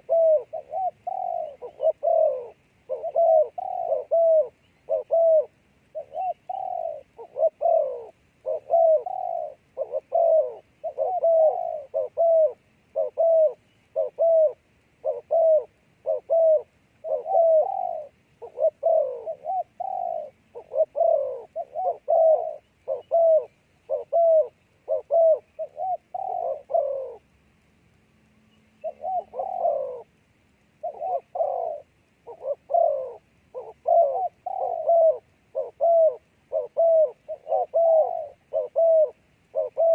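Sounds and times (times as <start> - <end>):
dove cooing: 0.0 - 27.3, 28.7 - 39.9.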